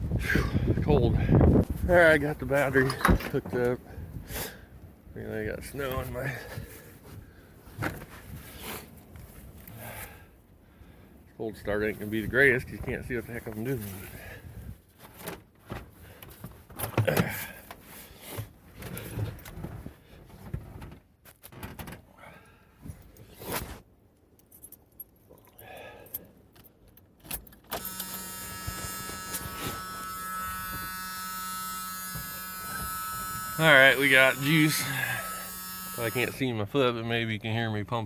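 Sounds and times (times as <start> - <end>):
rustling handling noise: 5.5 - 10.0, 11.6 - 14.2
steady electrical buzz: 27.8 - 36.4.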